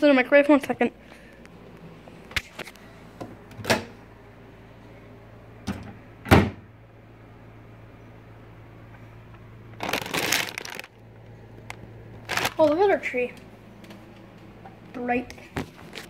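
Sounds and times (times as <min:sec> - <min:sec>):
microwave door bangs: 0:06.3 - 0:06.6.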